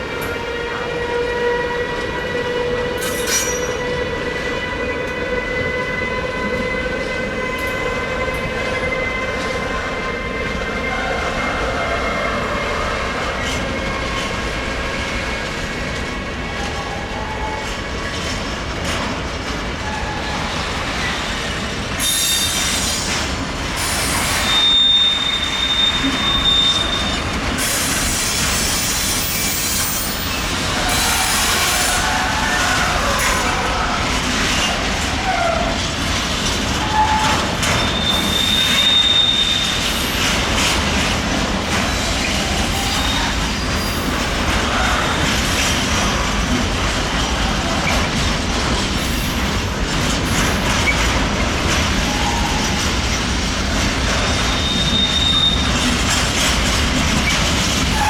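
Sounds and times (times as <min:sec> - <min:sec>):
train wheels squealing on rails: 0:00.0 - 0:58.0
rumble and clatter of wagons: 0:32.4 - 0:58.0.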